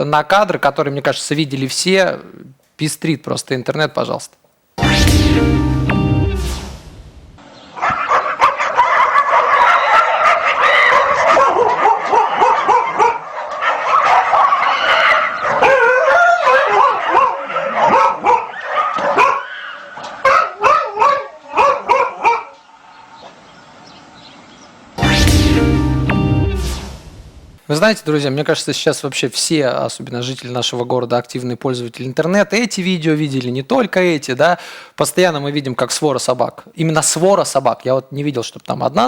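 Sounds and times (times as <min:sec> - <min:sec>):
dogs barking and yelping: 0:07.7 - 0:22.7.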